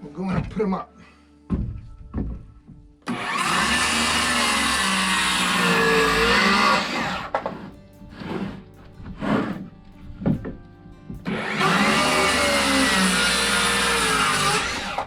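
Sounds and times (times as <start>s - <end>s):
electric power saw cutting wood: 3.0s - 9.7s, 11.2s - 15.0s.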